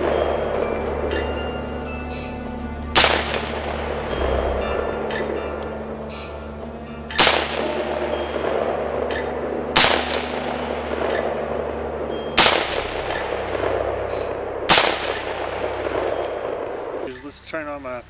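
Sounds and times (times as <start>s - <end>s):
rifle shots with ringing echo: 2.9s - 17.1s.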